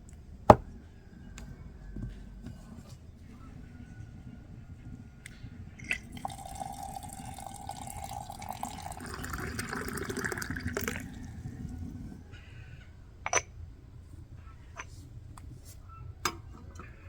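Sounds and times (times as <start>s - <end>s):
liquid pouring into vessel: 5.9s - 11.9s.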